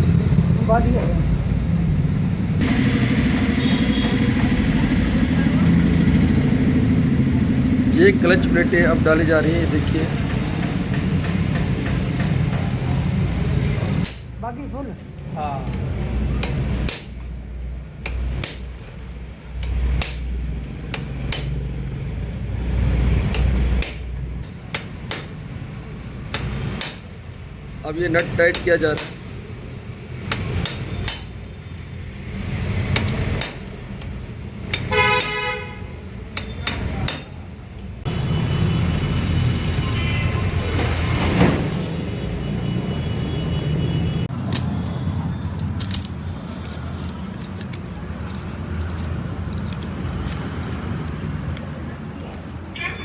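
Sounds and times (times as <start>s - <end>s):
metal-on-metal taps: 18.0s - 19.0s, 19.6s - 21.7s, 23.3s - 25.5s, 26.3s - 27.1s, 28.2s - 29.4s, 30.3s - 31.4s, 36.4s - 37.3s
hand tools clinking on metal: 19.6s - 21.7s, 23.3s - 25.5s, 28.0s - 29.4s, 30.3s - 31.5s.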